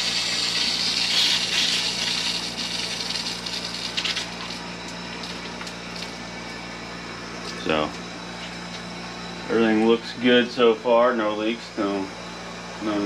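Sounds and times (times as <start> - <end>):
pipe spitting sputter: 0.0 - 4.6.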